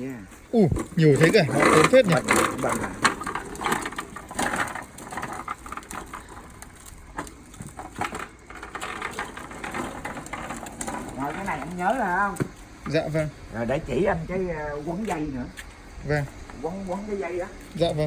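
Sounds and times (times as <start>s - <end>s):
objects being handled: 0.4s - 13.4s.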